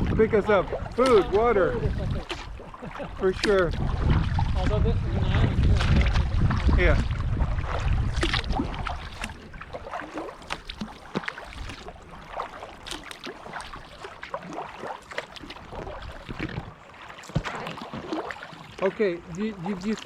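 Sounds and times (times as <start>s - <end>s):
wind rumble on microphone: 0.0s - 10.1s, 15.6s - 16.8s
paddle splashes and drips: 0.0s - 20.0s
water lapping at hull: 0.0s - 20.0s.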